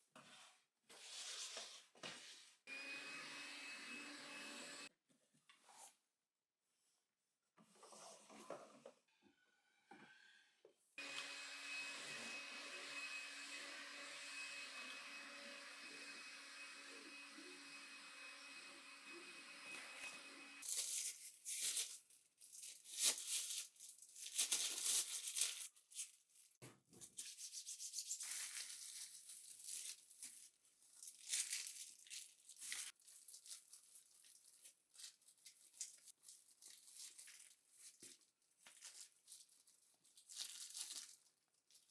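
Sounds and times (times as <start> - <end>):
appliance humming: 2.7 - 4.9, 11.0 - 20.6
rustling and crinkling: 20.6 - 41.9.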